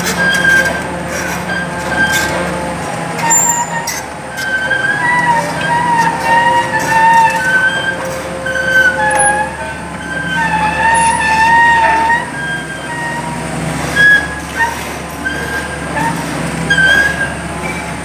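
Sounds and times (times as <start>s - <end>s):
excavator engine hum: 0.0s - 18.0s
high hydraulic whines and squeals: 0.0s - 18.0s.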